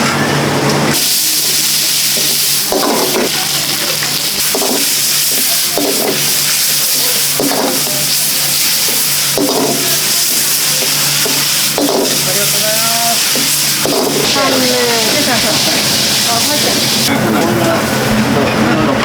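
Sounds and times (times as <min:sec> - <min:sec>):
food sizzling in a pan: 0:00.9 - 0:17.1
stirring strokes: 0:00.9 - 0:17.1.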